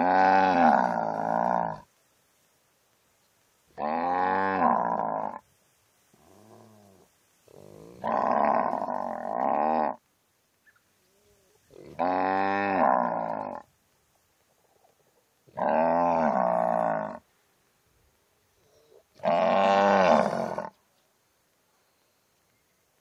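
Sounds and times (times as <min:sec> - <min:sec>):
cow mooing: 0:07.9 - 0:10.0, 0:19.2 - 0:20.8.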